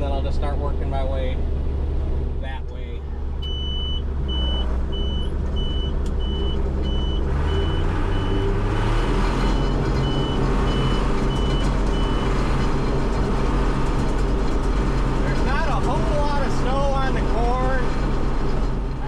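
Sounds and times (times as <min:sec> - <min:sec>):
diesel engine running: 0:00.0 - 0:19.0
backup alarm beeping: 0:03.4 - 0:08.6, 0:09.5 - 0:12.4.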